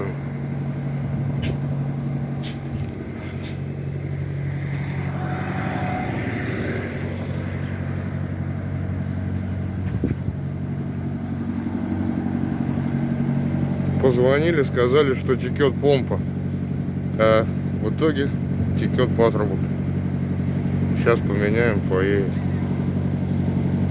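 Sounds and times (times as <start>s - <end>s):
diesel truck engine idling: 0.0s - 23.9s.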